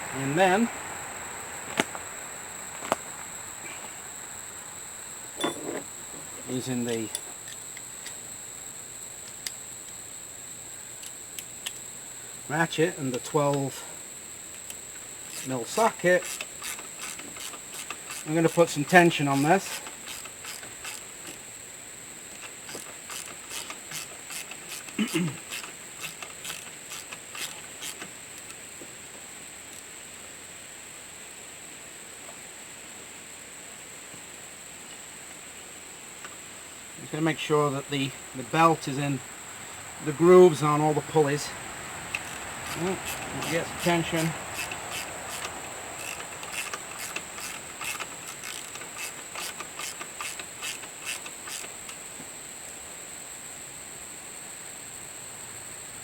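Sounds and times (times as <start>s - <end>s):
steady high-pitched whine: 0.0s - 32.0s, 32.8s - 56.0s
steady high hiss: 0.0s - 56.0s
ratchet clicking: 14.5s - 21.5s, 22.3s - 28.6s, 42.1s - 52.0s.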